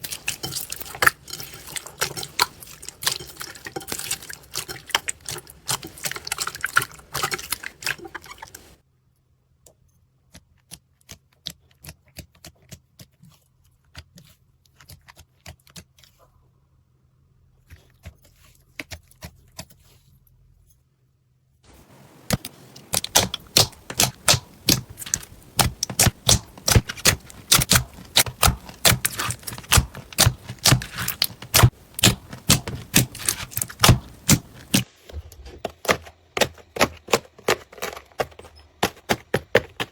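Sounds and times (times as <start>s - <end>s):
slime crackling and popping: 22.2s - 34.9s.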